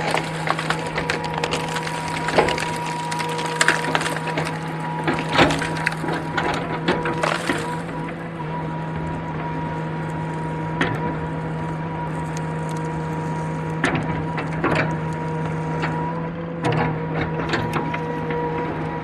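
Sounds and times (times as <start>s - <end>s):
sharp knocks of logs: 0.0s - 8.2s
excavator engine humming: 0.0s - 19.0s.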